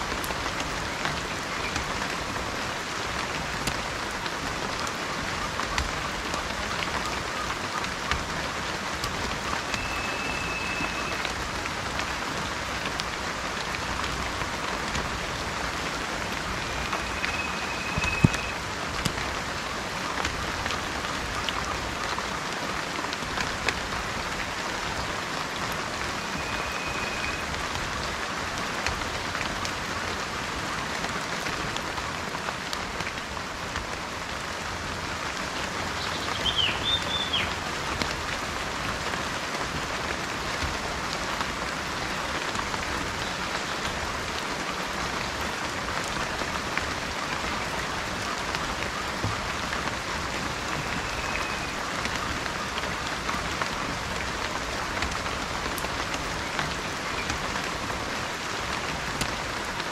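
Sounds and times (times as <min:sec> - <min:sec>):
steady rain falling: 0:00.0 - 0:59.9
bird whistling: 0:09.8 - 0:11.2, 0:16.8 - 0:18.6, 0:26.3 - 0:27.5, 0:36.0 - 0:37.5, 0:50.9 - 0:51.7.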